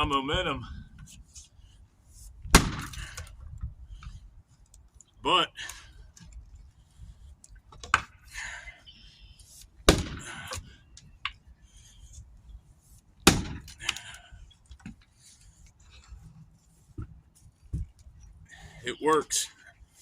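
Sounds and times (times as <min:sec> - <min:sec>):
axe chopping a log: 0:02.5 - 0:03.3, 0:09.8 - 0:10.6, 0:13.2 - 0:14.0.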